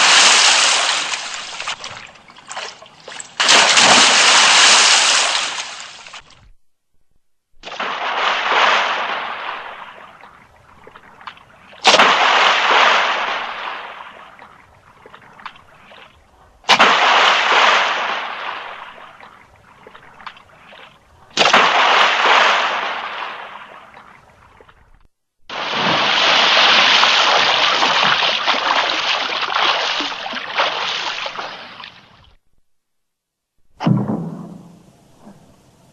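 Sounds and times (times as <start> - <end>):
body splashing into water: 0.0 - 6.4, 7.6 - 24.7, 25.5 - 32.2
churning splashing: 0.0 - 6.4, 7.6 - 24.9, 25.5 - 32.3.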